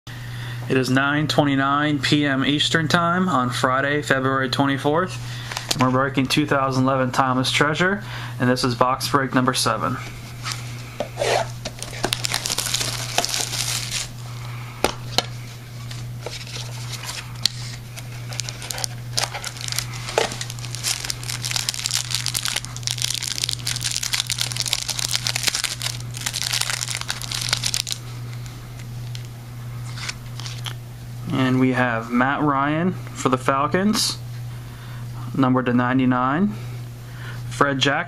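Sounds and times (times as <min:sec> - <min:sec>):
low electrical hum: 0:00.1 - 0:38.0
plastic wrapping crinkling and tearing: 0:11.7 - 0:14.2, 0:16.3 - 0:29.3, 0:29.9 - 0:30.8.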